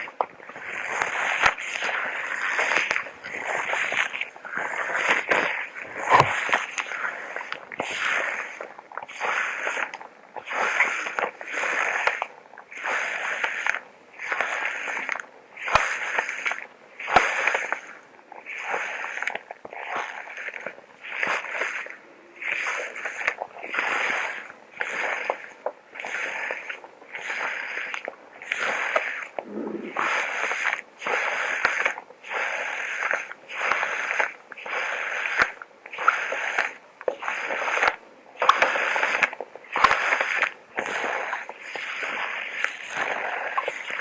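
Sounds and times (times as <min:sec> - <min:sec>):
rhythmic breathing in a suit: 0:10.5 - 0:44.0.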